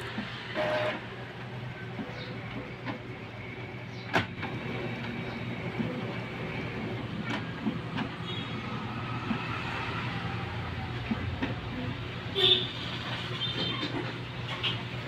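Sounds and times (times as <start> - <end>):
printer motors whirring: 0.0 - 15.0
printer sharp clicks: 0.2 - 1.0, 4.0 - 5.2.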